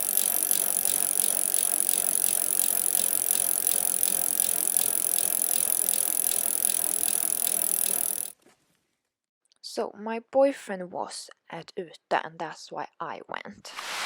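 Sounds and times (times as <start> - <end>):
mechanical rattling and ticking: 0.0 - 8.4.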